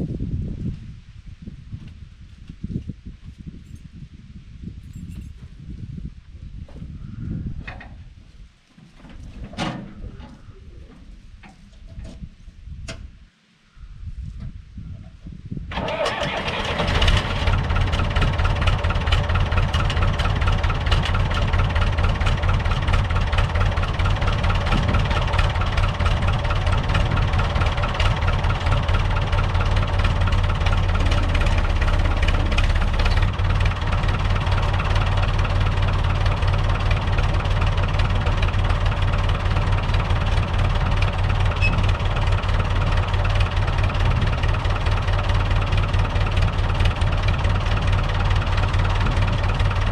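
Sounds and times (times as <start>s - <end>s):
tractor diesel engine idling: 15.7s - 49.9s.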